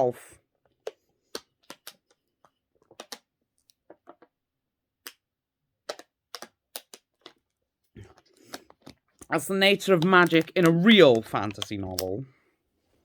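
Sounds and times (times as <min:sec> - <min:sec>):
keyboard typing: 0:09.6 - 0:12.2.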